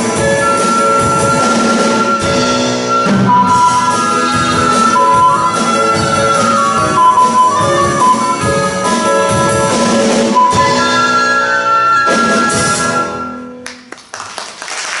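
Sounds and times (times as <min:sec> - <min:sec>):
live band with brass and drums: 0:00.0 - 0:13.6
audience applause: 0:13.6 - 0:15.0.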